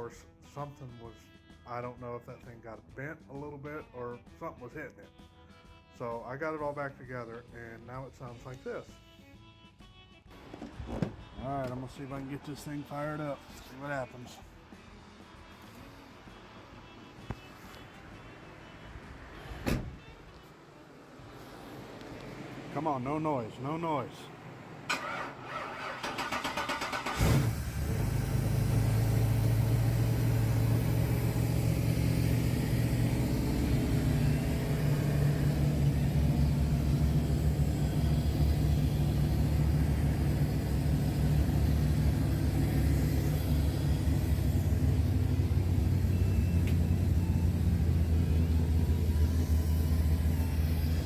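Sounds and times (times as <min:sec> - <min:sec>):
engine catching and idling: 0:24.4 - 0:51.0
starter cranking engine: 0:24.9 - 0:30.7.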